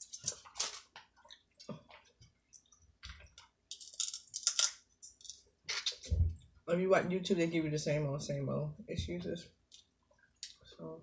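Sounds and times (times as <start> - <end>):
chewing crunches and mouth clicks: 0.0 - 6.1.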